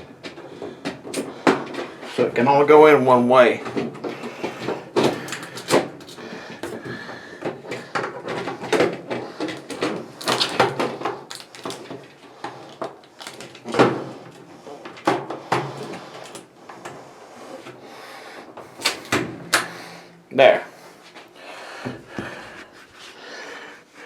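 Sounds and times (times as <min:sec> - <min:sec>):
plastic clicks knocks and rattles: 0:03.7 - 0:06.8, 0:07.4 - 0:17.0.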